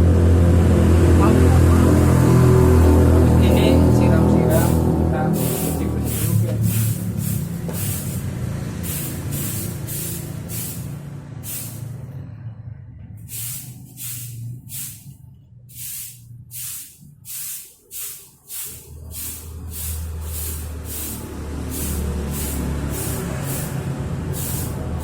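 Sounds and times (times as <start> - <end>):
low hum: 0.0 - 9.2
swishing on a wet floor: 4.6 - 12.0, 13.2 - 15.1, 15.7 - 25.0.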